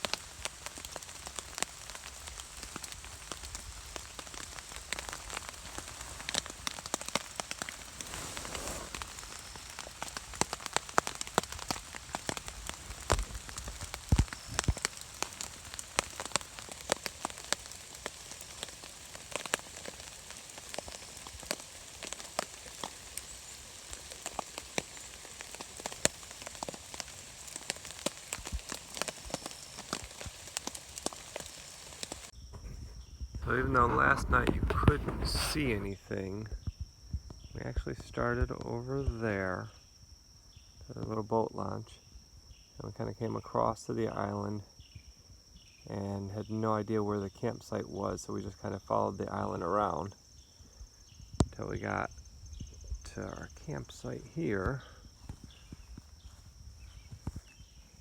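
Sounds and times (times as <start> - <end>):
raindrops tapping: 0.0 - 32.3
rain falling: 0.0 - 32.4, 33.4 - 36.0.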